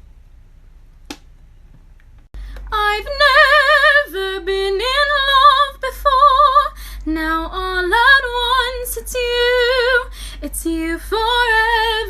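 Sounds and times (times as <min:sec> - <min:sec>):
room hum: 0:00.0 - 0:12.0
woman singing with vibrato: 0:02.7 - 0:12.0.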